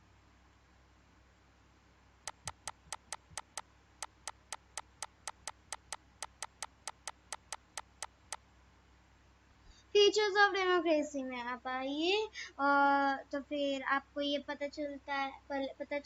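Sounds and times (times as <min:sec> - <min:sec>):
faint background hum: 0:00.0 - 0:16.0
sharp clicks: 0:02.3 - 0:08.4.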